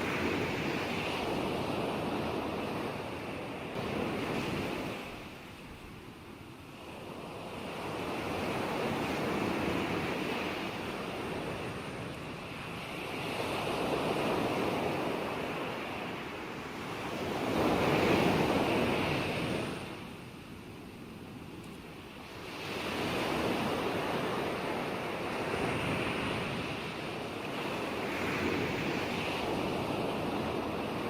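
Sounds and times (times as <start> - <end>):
ocean waves surging: 22.0 - 31.0.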